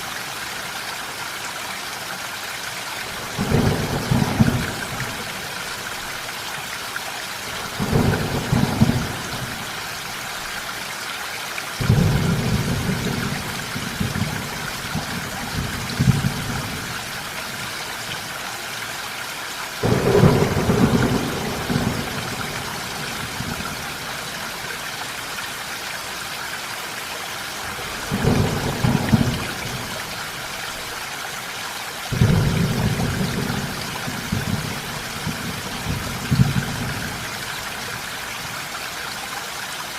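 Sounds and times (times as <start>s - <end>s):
steady rain hissing: 0.0s - 39.9s
thunder rumbling: 3.4s - 5.3s, 19.8s - 24.2s, 27.7s - 30.2s, 32.1s - 37.3s.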